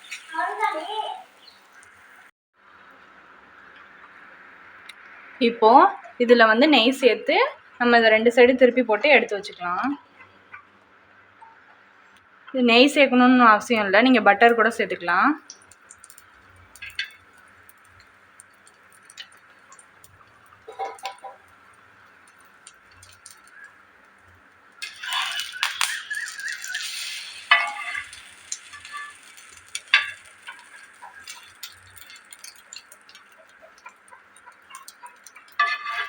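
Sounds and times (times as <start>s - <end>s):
utensils clinking on griddle pan: 15.9s - 23.8s, 24.8s - 36.0s.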